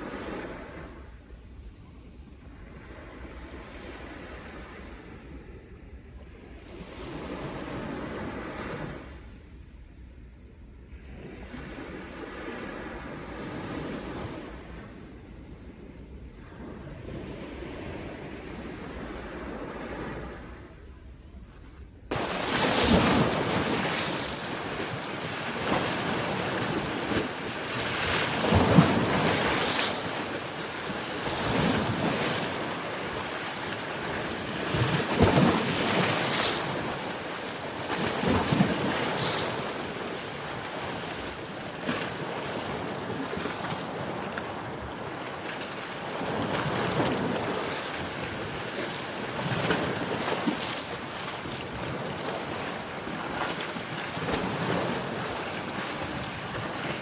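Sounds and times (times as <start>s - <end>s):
waves breaking on shore: 0.0s - 1.2s, 22.1s - 57.0s.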